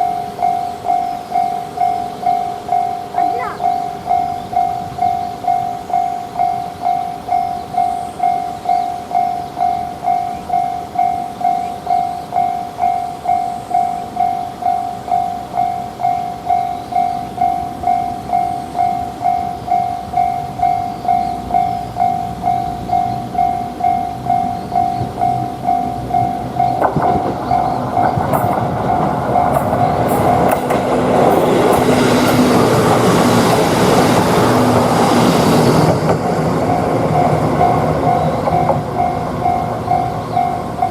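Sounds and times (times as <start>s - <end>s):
level-crossing bell ringing: 0.0s - 26.8s, 36.8s - 40.9s
train rumble and wheel clatter: 0.0s - 40.9s.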